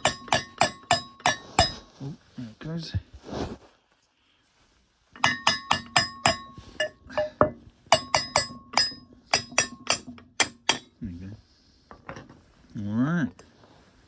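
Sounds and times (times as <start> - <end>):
hammer striking steel: 0.0 - 1.8, 5.2 - 10.9
metallic ring: 0.0 - 1.9, 5.2 - 10.9.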